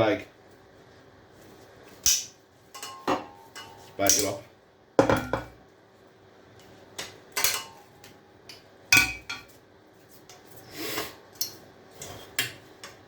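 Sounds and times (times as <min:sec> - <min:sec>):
scrap copper clinking: 0:02.7 - 0:04.0.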